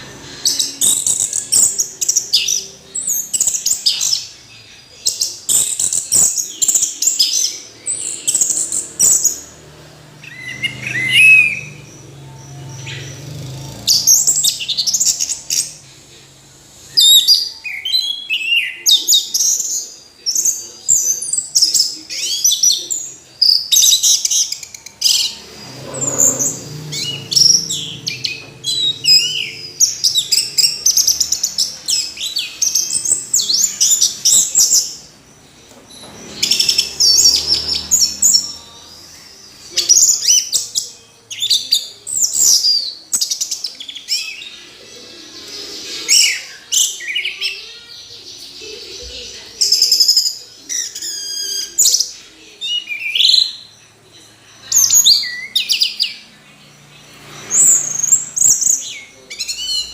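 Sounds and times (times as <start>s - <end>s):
thrush singing: 0.0s - 20.2s, 21.2s - 49.8s.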